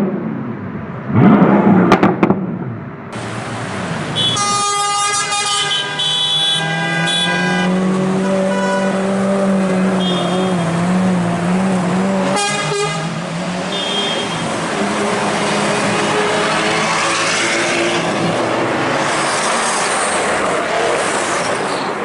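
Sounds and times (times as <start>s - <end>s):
passing car rushing: 6.6s - 22.0s.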